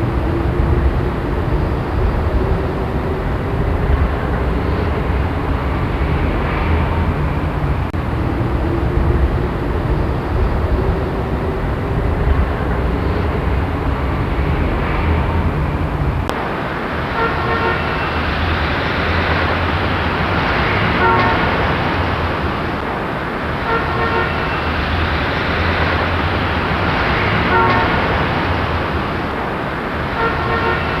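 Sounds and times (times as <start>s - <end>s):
traffic rumble of engines and tyres: 0.0s - 31.0s
car horns honking: 16.3s - 22.9s, 23.5s - 29.4s, 30.0s - 31.0s.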